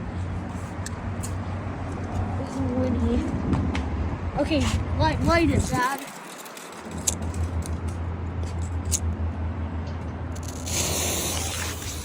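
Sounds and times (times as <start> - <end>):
smoke firework hissing: 10.4 - 12.0.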